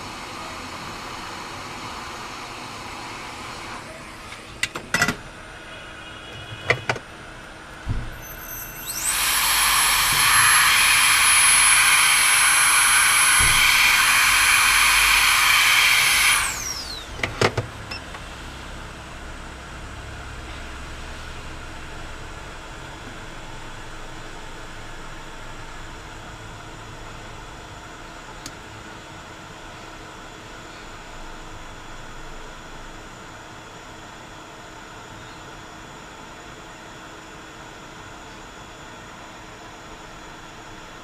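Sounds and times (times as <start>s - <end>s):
small electric motor whine: 8.1s - 17.5s
rush of air: 8.9s - 17.0s.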